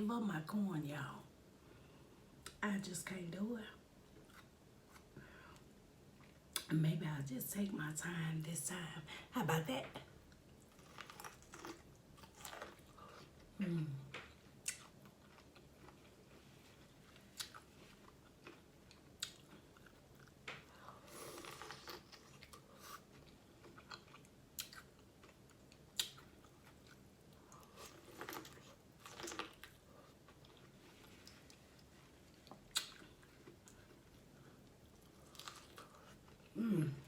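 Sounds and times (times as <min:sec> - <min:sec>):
chewing: 0:10.3 - 0:13.5, 0:14.2 - 0:36.5.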